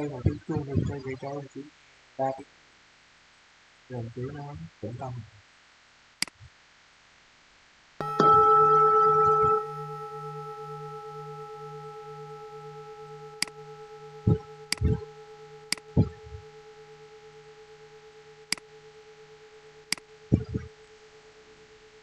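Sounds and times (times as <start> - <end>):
temple bell ringing: 8.0 - 22.0.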